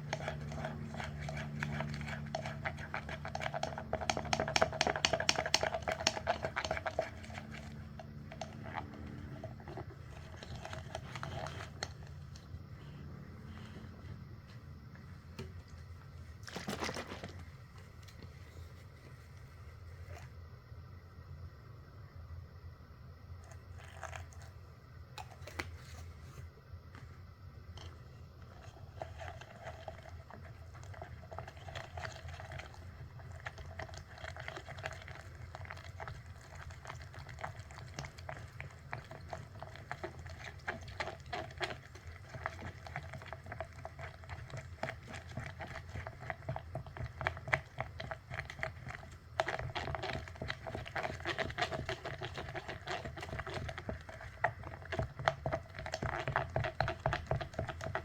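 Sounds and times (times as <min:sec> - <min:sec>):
steady low hum: 0:00.0 - 0:54.9.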